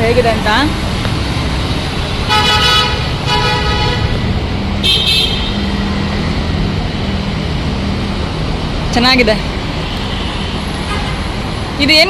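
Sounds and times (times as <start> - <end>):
traffic rumble: 0.0 - 12.0
vehicle horn toots: 2.3 - 4.1, 4.8 - 5.7.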